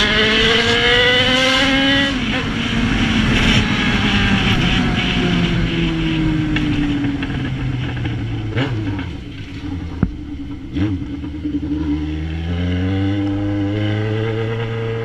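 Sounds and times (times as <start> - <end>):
motorcycle engine revving: 0.0 - 15.0
exhaust pop: 6.4 - 11.9.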